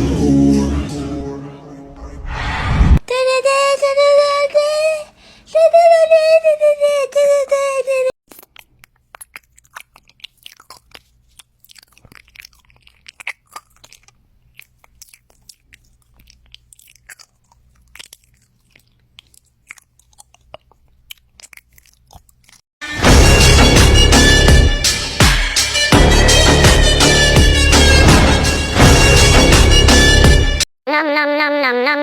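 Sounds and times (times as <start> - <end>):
loud music: 0.0 - 2.4, 22.8 - 30.6
crunching and chewing crisp food: 8.2 - 22.7.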